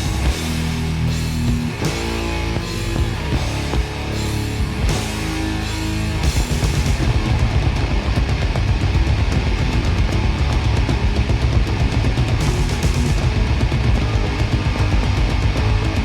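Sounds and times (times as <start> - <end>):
death metal with distorted guitars: 0.0 - 16.0
rapid pounding drumming: 6.2 - 16.0.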